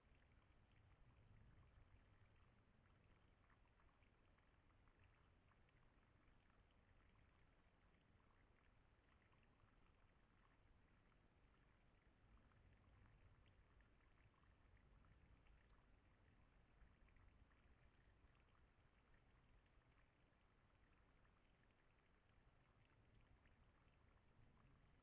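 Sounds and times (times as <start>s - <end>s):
faint ticks: 0.0s - 25.0s.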